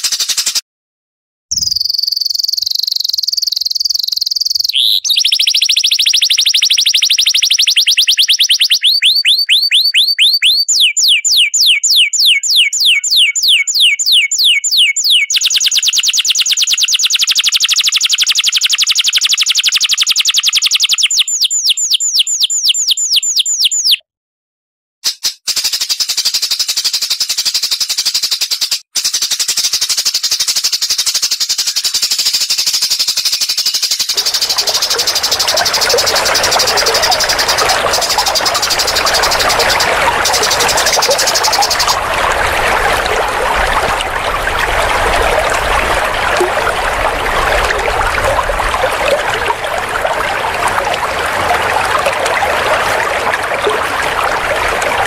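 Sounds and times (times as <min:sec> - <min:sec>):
buzzy bird chatter: 0:01.5 - 0:17.0, 0:19.5 - 0:24.0, 0:33.0 - 0:43.0
songbird whistling and trilling: 0:01.5 - 0:24.0.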